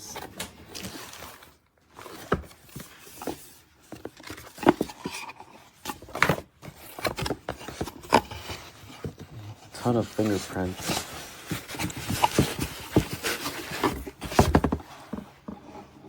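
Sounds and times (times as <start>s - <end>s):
packaging rubbing and scraping: 0.0s - 16.0s.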